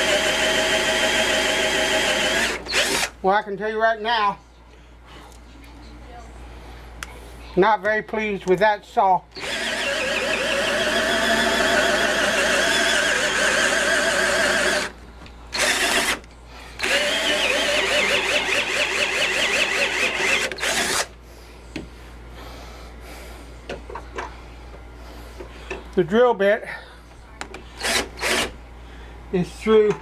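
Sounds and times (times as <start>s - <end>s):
drill with hole saw cutting wood: 0.0s - 3.1s, 9.4s - 14.9s, 15.5s - 16.2s, 16.8s - 21.1s, 27.8s - 28.5s.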